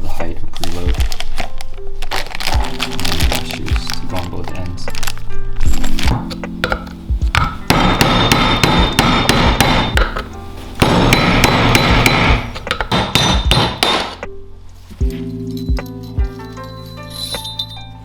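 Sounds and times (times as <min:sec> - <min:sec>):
background music: 0:00.0 - 0:18.0
rapid hammering: 0:06.6 - 0:14.3.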